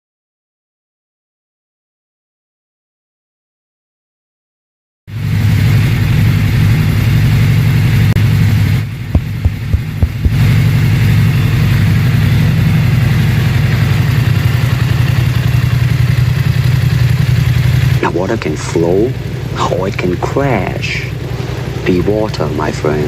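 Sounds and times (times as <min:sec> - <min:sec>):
motorcycle engine idling: 0:05.8 - 0:23.0.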